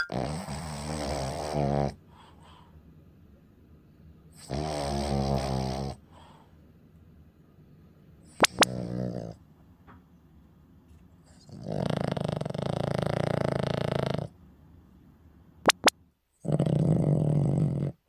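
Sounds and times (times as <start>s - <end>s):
dog snoring: 0.0s - 2.7s, 4.3s - 6.5s, 8.2s - 9.5s, 11.2s - 14.4s, 15.7s - 18.0s
sharp clicks: 15.7s - 15.9s.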